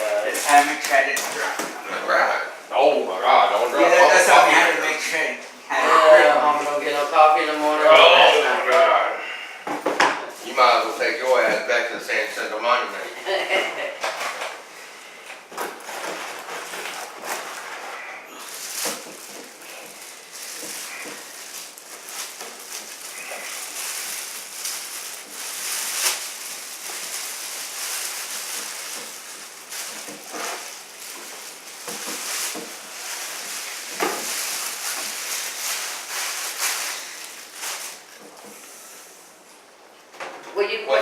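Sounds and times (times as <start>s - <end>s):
packaging rustling and crinkling: 0.0s - 1.8s, 14.0s - 38.6s.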